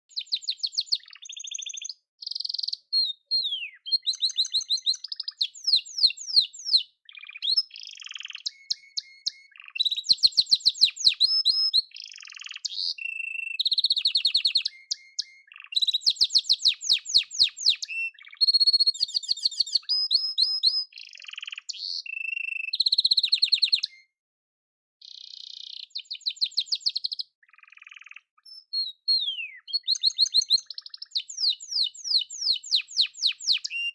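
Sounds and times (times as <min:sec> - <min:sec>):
canary singing: 0:00.0 - 0:24.1, 0:25.0 - 0:33.9.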